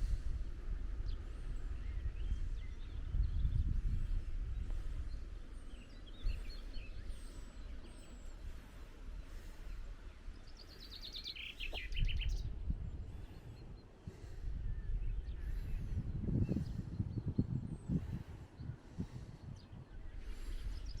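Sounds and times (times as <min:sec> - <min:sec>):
songbirds chirping: 0:00.0 - 0:21.0
steady low rumble: 0:11.6 - 0:21.0.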